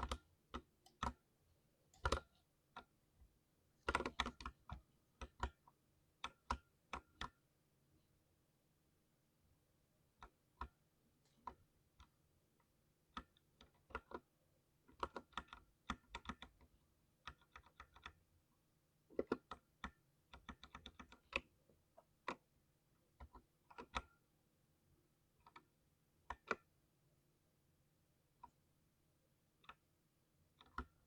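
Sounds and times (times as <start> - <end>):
thocky mechanical keyboard typing: 3.9 - 5.6, 17.3 - 18.2.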